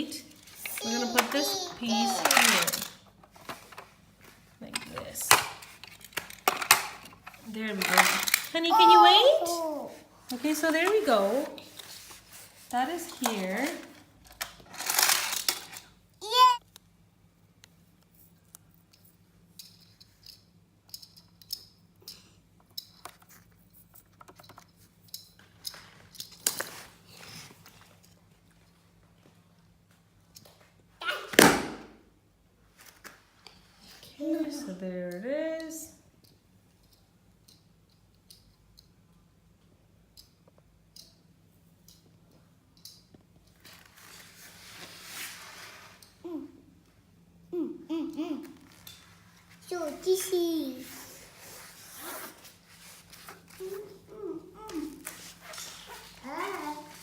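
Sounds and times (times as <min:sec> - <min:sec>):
plastic pieces scraping rattle: 0:00.4 - 0:03.8, 0:04.7 - 0:08.8, 0:13.0 - 0:15.9
plastic toy track clicks: 0:00.7 - 0:03.8, 0:04.8 - 0:08.6, 0:13.2 - 0:15.9
plastic toy pieces clicking: 0:05.3 - 0:08.6, 0:14.4 - 0:15.8
young child vocal sound: 0:08.6 - 0:10.0, 0:16.2 - 0:16.6
plastic rustling scrape: 0:43.7 - 0:46.0.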